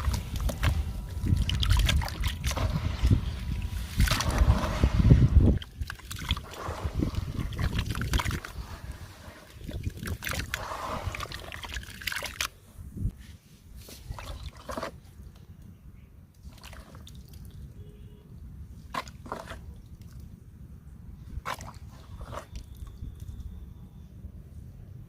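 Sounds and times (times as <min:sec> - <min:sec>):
gritty sloshing and crumbling: 0:00.0 - 0:12.6
water drips and small splashes: 0:00.0 - 0:12.6, 0:16.3 - 0:20.4.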